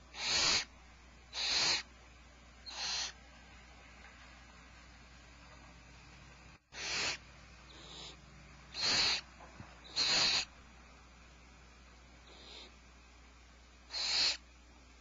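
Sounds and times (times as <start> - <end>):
owl hissing screeches: 0.0 - 0.7, 1.3 - 1.9, 2.6 - 3.2, 6.7 - 10.6, 12.3 - 12.8, 13.9 - 14.4.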